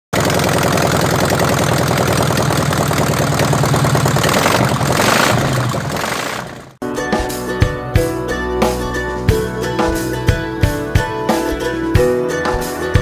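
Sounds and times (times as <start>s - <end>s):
loud rough car engine: 0.1s - 6.8s.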